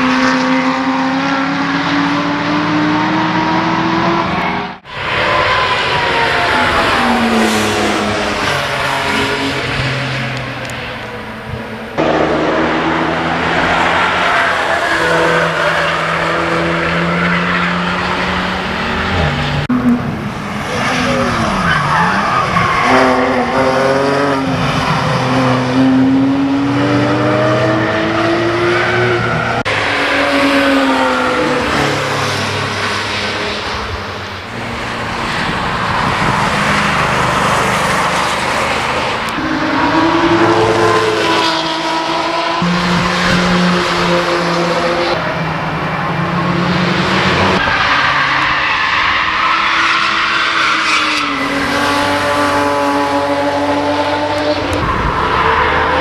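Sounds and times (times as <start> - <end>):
sports cars passing at speed: 0.0 - 56.0.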